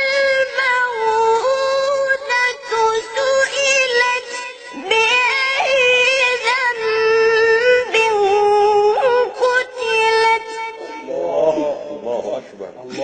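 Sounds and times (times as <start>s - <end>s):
child reciting melodically: 0.0s - 12.0s.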